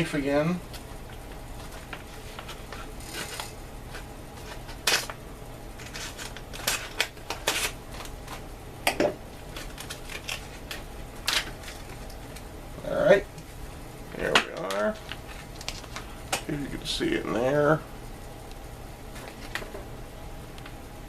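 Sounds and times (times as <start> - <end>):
packaging crinkling: 5.8 - 8.4, 9.4 - 12.5, 14.5 - 16.2.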